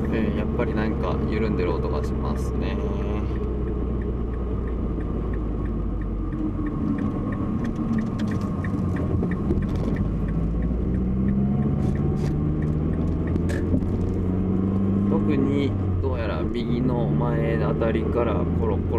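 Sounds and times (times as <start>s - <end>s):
light ticking: 0.0s - 14.2s
car engine and road rumble: 0.0s - 18.9s.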